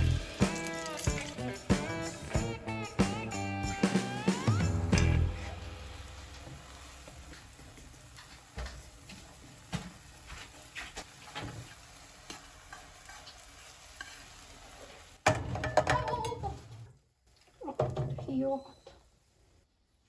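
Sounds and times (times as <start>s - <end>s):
food frying in a pan: 0.0s - 16.3s
utensil scraping against pan: 10.8s - 14.4s.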